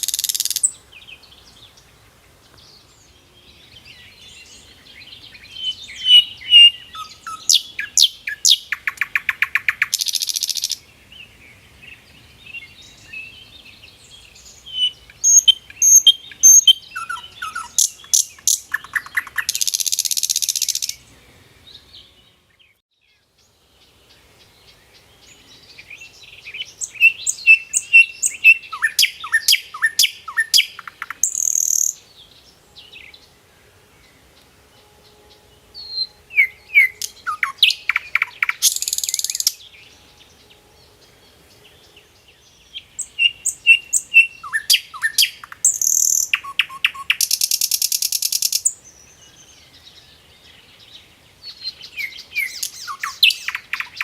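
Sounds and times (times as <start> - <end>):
songbird chirping and trilling: 0.0 - 54.0.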